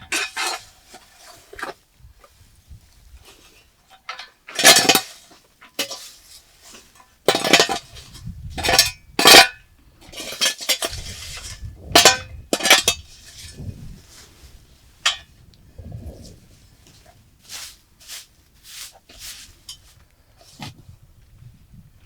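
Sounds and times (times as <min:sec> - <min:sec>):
dishes and utensils clattering: 0:07.3 - 0:07.9, 0:08.6 - 0:13.0.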